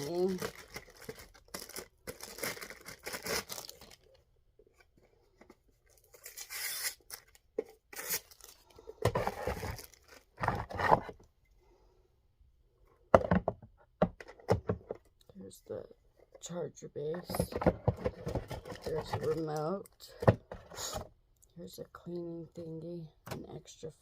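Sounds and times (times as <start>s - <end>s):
packaging tearing and crinkling: 0.0s - 4.2s, 6.1s - 10.4s.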